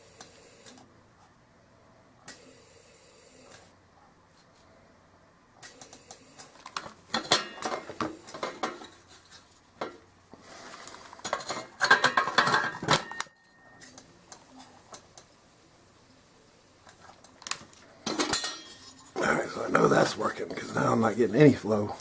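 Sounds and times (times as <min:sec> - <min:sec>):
metal lantern parts clinking: 0:11.2 - 0:14.0, 0:17.4 - 0:19.2.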